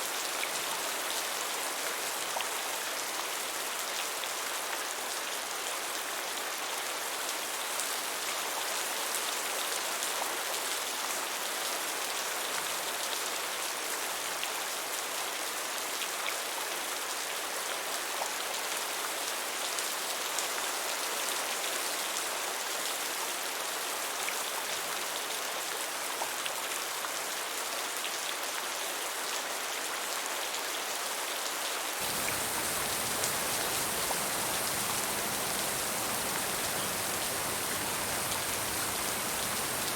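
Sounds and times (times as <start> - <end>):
steady rain falling: 16.5 - 39.9.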